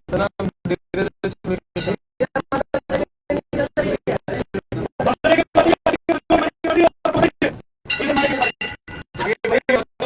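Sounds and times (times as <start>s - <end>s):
crowd voices: 3.3s - 9.8s.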